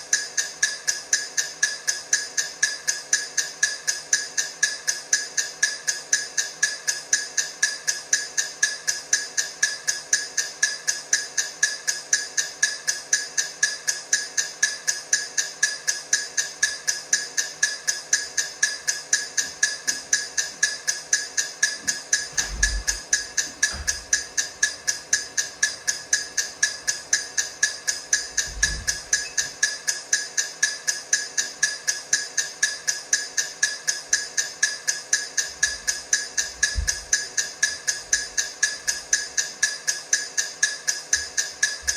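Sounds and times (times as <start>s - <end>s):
low thuds: 21.8s - 26.3s, 28.1s - 29.2s.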